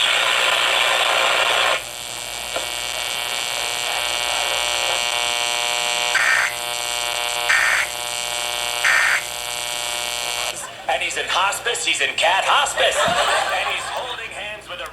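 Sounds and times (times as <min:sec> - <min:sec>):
noisy hiss: 0:00.0 - 0:14.9
steady electrical buzz: 0:00.0 - 0:14.9
screeching data bursts: 0:06.1 - 0:06.6, 0:07.4 - 0:07.9, 0:08.8 - 0:09.3.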